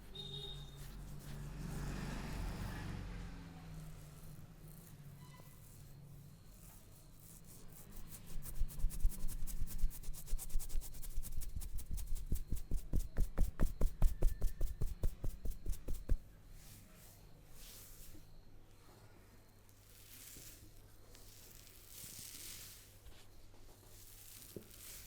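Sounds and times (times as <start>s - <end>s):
hands striking a head: 11.8s - 16.2s.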